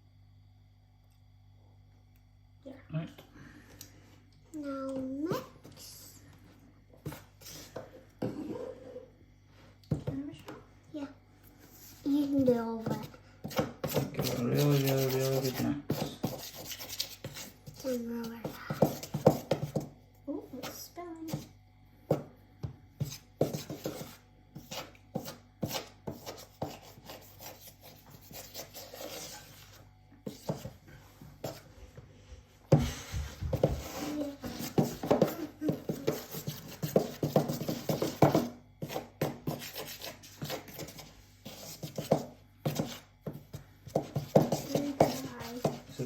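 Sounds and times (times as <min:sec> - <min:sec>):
spoon scraping a bowl: 0:13.0 - 0:19.8, 0:23.0 - 0:30.7.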